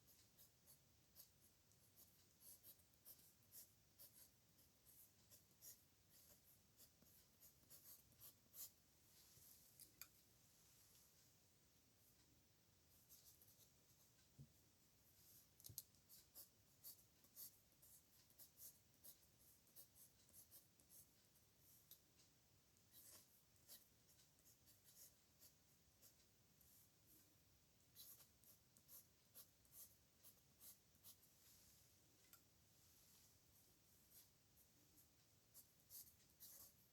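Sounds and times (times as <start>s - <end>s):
pen scratching on paper: 0.0s - 8.8s, 12.9s - 13.7s, 15.2s - 21.9s, 22.9s - 26.8s, 27.9s - 31.3s, 35.5s - 36.9s.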